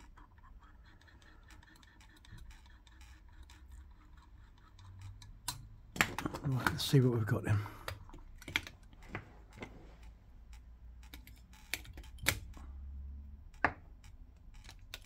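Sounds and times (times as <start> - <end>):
transmitter clicks and taps: 7.8 - 12.7, 13.4 - 15.0.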